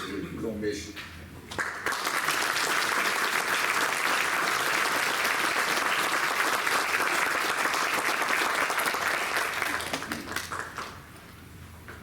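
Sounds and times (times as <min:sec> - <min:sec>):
audience applauding: 0:01.6 - 0:11.0.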